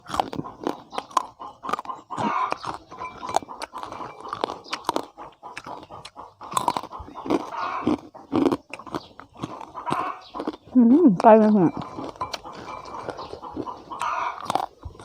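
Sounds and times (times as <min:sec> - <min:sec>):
person crunching and chewing food: 0:00.0 - 0:15.0.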